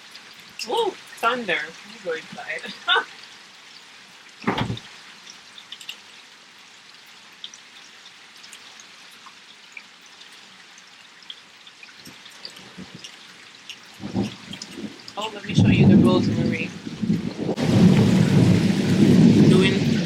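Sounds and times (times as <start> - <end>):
drips ticking: 0.0 - 17.6
steady rain falling: 0.0 - 20.0
loud thump: 4.4 - 4.8.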